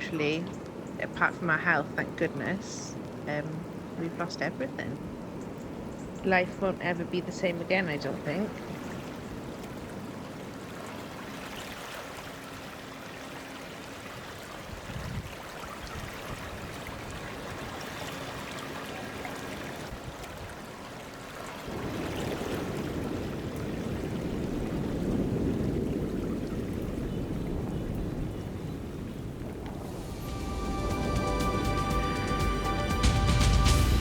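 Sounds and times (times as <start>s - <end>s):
river water rushing: 0.0s - 24.0s, 29.6s - 34.0s.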